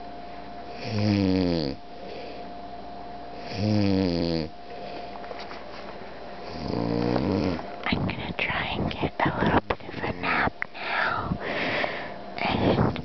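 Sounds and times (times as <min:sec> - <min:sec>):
man snoring: 0:00.7 - 0:01.8, 0:03.4 - 0:04.5, 0:06.4 - 0:07.6.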